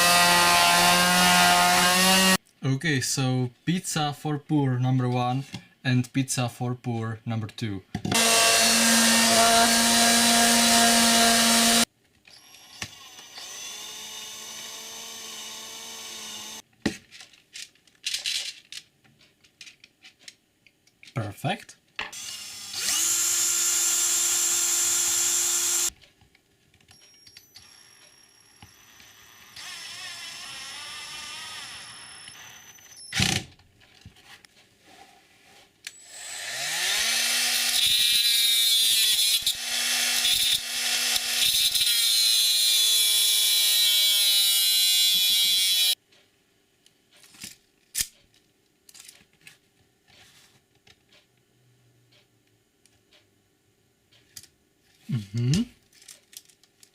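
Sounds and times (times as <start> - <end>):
power drill motor running: 8.2 - 16.6, 22.2 - 25.9, 27.6 - 33.0, 36.0 - 46.0.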